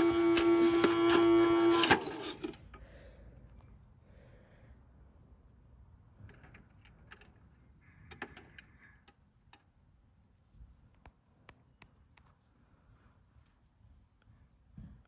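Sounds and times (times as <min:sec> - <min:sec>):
plastic parts clicking: 0:06.2 - 0:09.7.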